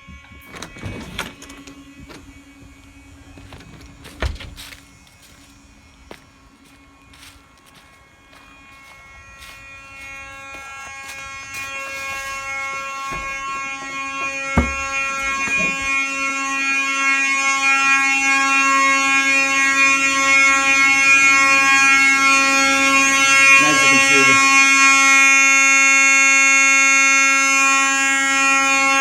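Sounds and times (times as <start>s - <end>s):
fire alarm horn buzzing: 0.0s - 29.0s
knock: 14.6s - 14.8s.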